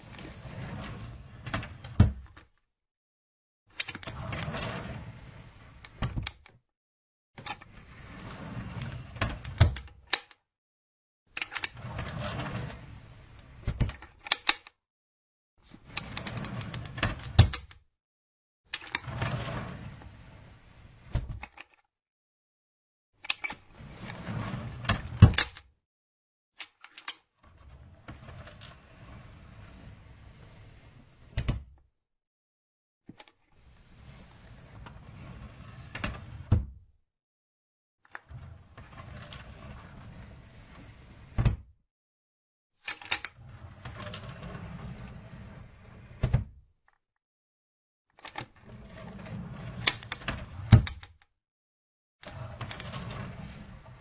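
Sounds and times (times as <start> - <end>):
drawer sliding on runners: 0.0 - 2.5, 3.8 - 6.5, 7.5 - 9.9, 11.4 - 14.4, 15.7 - 17.7, 18.8 - 21.7, 23.4 - 25.6, 27.5 - 31.7, 33.6 - 36.7, 38.2 - 41.7, 43.0 - 46.5, 48.3 - 51.0, 52.2 - 54.0
drawer knocking shut: 36.4 - 36.7.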